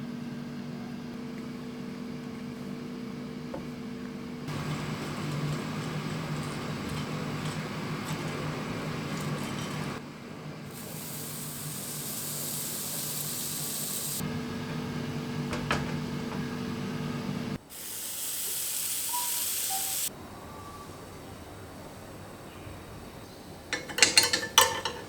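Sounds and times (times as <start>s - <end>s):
steady hissing: 10.7s - 14.2s, 17.6s - 25.0s.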